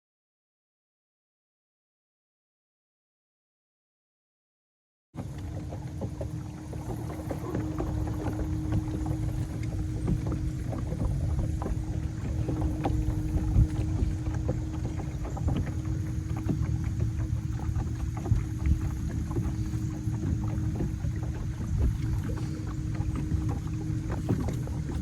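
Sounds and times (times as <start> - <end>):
boat motor humming: 5.2 - 25.0
wind and water wash: 5.2 - 25.0.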